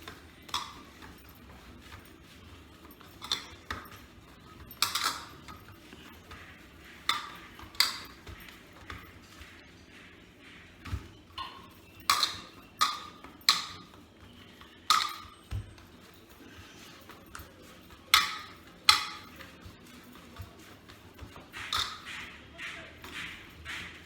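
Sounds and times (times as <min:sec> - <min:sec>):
sharp kitchen knocks with ring: 0:21.6 - 0:24.0.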